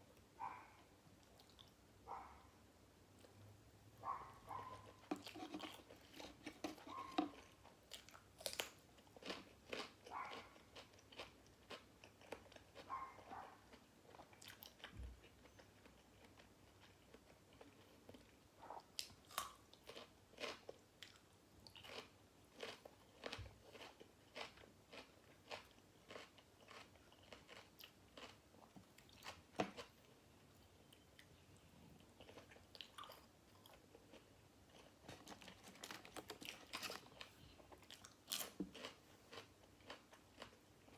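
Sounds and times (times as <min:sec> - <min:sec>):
wet crunchy chewing: 0:04.5 - 0:12.8, 0:21.8 - 0:30.0, 0:32.2 - 0:40.6.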